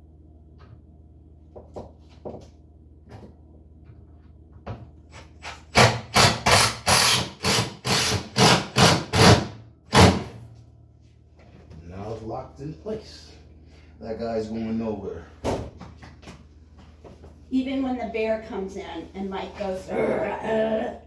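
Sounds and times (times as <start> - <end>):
power driver driving screw into wood: 5.4 - 10.3.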